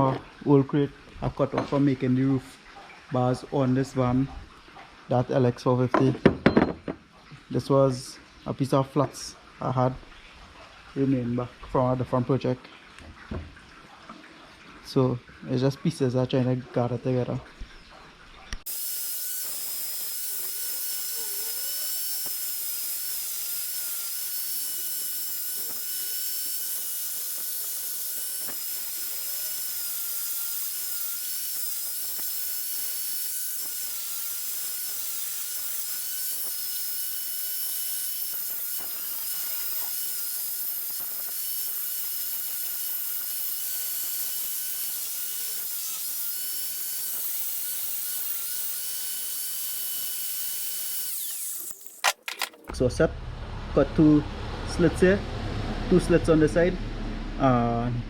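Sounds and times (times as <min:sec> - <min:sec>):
power tool whining: 0:18.6 - 0:52.9.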